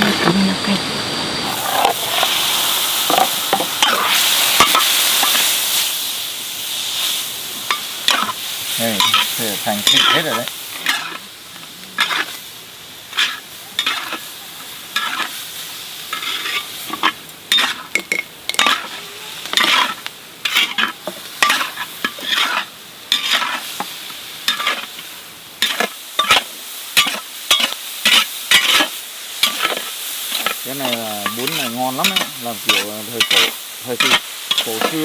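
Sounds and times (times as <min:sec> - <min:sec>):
meat sizzling in a pan: 0:00.0 - 0:35.0
utensil scraping a pan: 0:07.7 - 0:11.3, 0:12.0 - 0:12.4, 0:13.1 - 0:14.2, 0:14.9 - 0:15.4, 0:16.1 - 0:25.0, 0:25.6 - 0:35.0.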